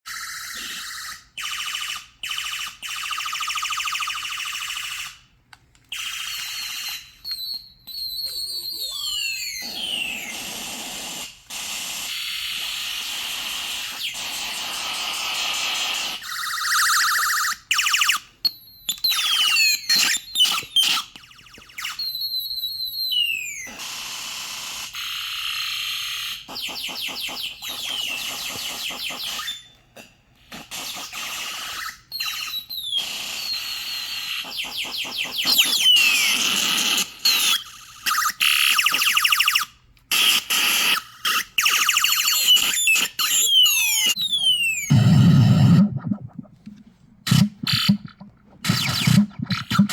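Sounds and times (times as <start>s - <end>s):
falling electronic whistles: 5.9s - 10.5s, 16.0s - 23.7s, 35.4s - 46.6s, 47.3s - 49.9s
toy gun laser zaps: 8.2s - 18.2s, 18.9s - 22.2s, 23.1s - 29.6s, 30.6s - 46.4s, 47.3s - 49.9s
pulsing electronic tone: 44.3s - 49.9s
stepped falling tone: 44.4s - 49.9s
falling laser zaps: 47.3s - 49.9s.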